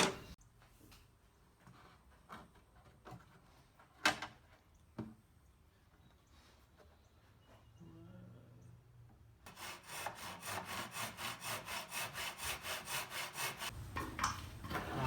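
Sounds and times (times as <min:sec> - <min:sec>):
hand saw cutting wood: 0:09.5 - 0:13.8.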